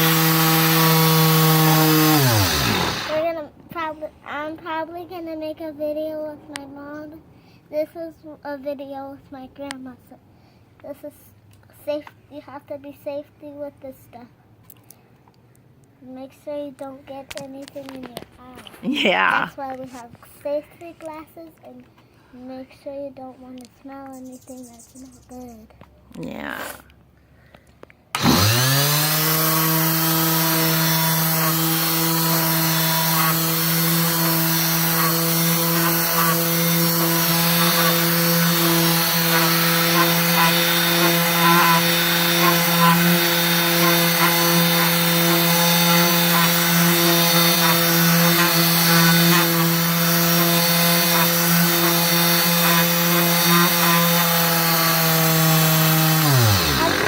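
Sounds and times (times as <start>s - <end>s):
orbital sander sanding wood: 0.0s - 3.3s, 28.2s - 57.0s.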